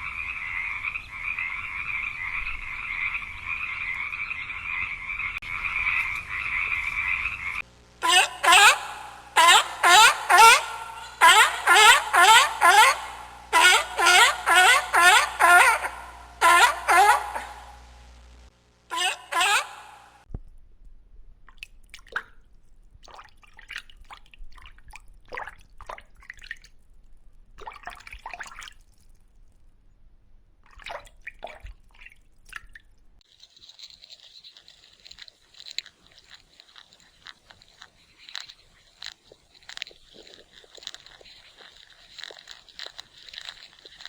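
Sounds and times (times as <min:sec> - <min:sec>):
faint steady hiss: 0:02.0 - 0:14.1, 0:15.3 - 0:19.0, 0:33.2 - 0:44.0
animal chewing and crunching: 0:33.2 - 0:44.0.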